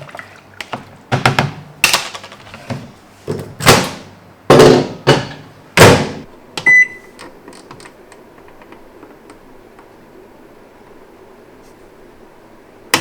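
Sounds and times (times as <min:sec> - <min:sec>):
microwave oven humming: 0:05.2 - 0:13.0
short keypad beep: 0:06.6 - 0:07.1.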